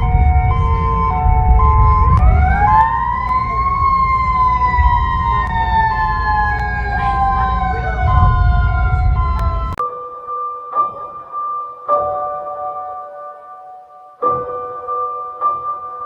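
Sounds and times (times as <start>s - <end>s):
alarm siren winding: 0.0s - 9.8s
continuous low rumble: 0.0s - 9.8s
two-note alternating tone: 0.0s - 12.7s.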